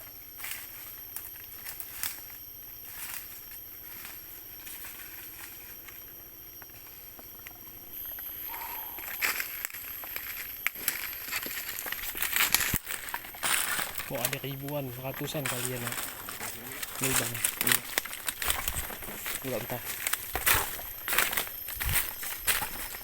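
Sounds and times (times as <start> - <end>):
high-pitched insect drone: 0.0 - 23.0
footsteps in leaf litter: 0.3 - 6.1, 7.9 - 23.0.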